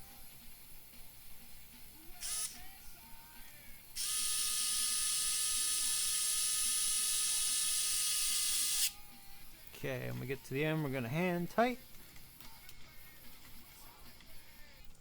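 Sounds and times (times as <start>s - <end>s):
electric screwdriver whining: 2.2s - 2.6s, 4.0s - 9.0s.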